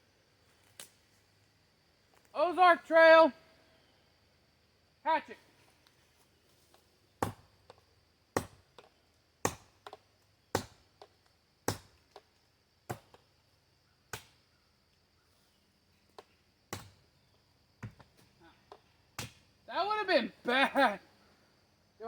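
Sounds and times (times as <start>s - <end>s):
hatchet chopping wood: 7.2s - 13.3s, 14.1s - 14.4s, 16.2s - 17.0s, 17.8s - 19.4s.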